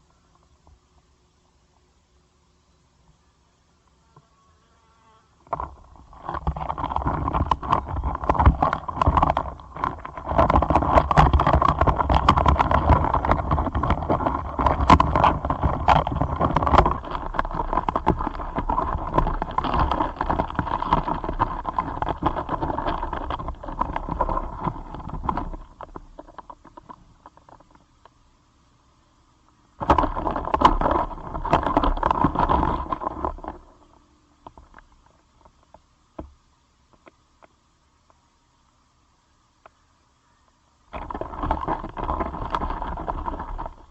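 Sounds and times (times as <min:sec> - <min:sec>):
beetles scratching and clicking: 0:05.4 - 0:28.2, 0:29.8 - 0:36.3, 0:40.9 - 0:43.9.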